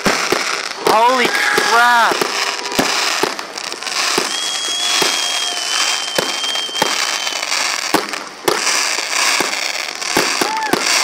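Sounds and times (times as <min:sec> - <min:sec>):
firework bangs: 0:00.0 - 0:11.0
firework crackling: 0:00.0 - 0:11.0
thin high whistle: 0:04.0 - 0:07.8.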